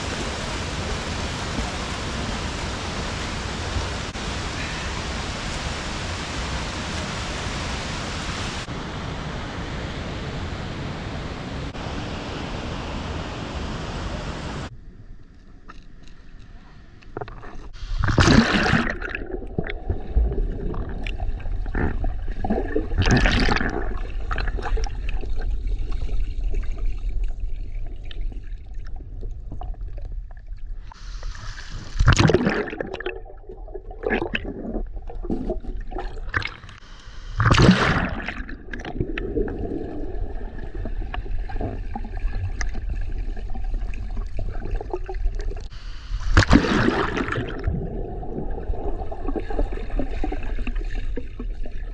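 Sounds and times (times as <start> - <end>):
water sloshing and gurgling: 0.0 - 4.9, 14.7 - 36.8, 37.4 - 51.9
water splashing surges: 0.0 - 14.7, 17.7 - 26.6, 34.1 - 51.9
rushing water rumble: 0.0 - 14.8, 17.2 - 51.9.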